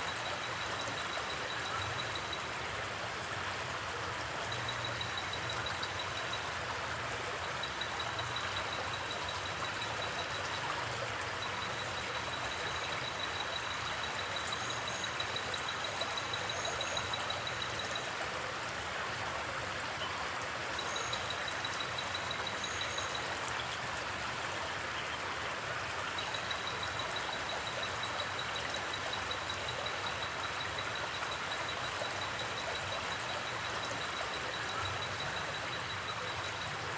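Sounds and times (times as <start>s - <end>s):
pulsing insect trill: 0.1s - 2.4s, 7.4s - 18.1s, 20.8s - 23.3s, 26.2s - 36.9s.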